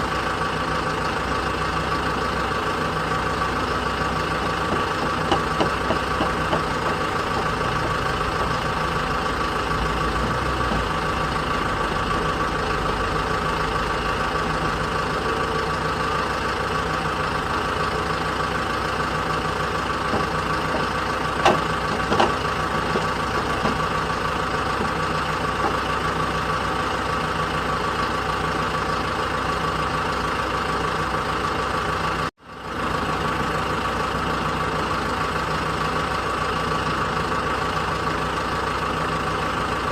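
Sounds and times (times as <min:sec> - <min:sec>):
diesel engine running steadily: 0:00.0 - 0:39.9
short knocks: 0:04.7 - 0:08.6, 0:20.1 - 0:23.9.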